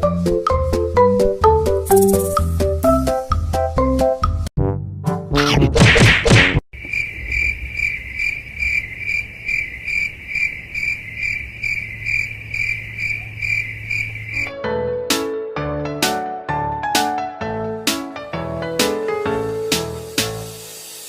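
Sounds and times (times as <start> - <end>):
high-pitched insect chirping: 1.9 - 2.5, 6.8 - 14.5.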